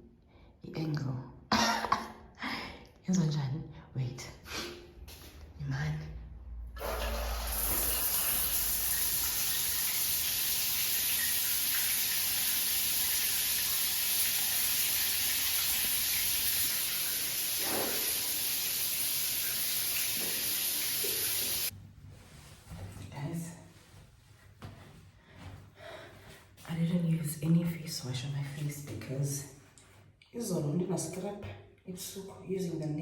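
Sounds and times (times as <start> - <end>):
water running from a tap: 6.8 - 21.7.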